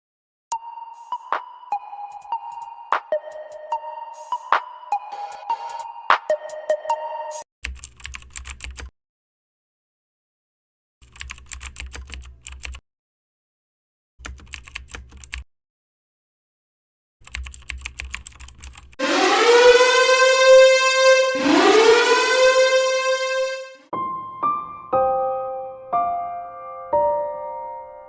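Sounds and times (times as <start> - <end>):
computer keyboard typing: 7.6 - 8.9, 11.0 - 12.8, 14.2 - 15.4, 17.2 - 19.0
warning siren winding up: 19.0 - 23.9.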